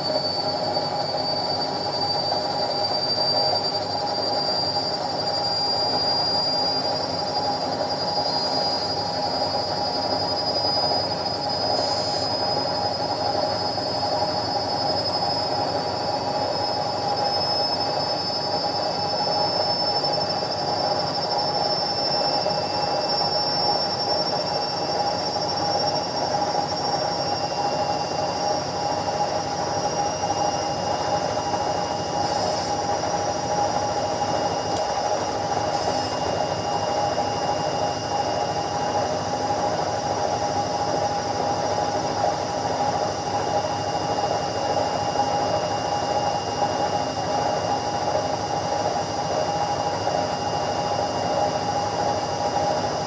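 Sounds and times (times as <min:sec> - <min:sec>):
washing machine humming: 0:06.5 - 0:45.8.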